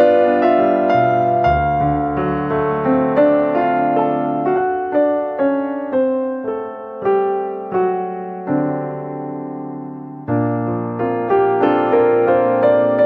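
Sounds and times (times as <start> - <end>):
slow solo piano melody: 0.0 - 13.0.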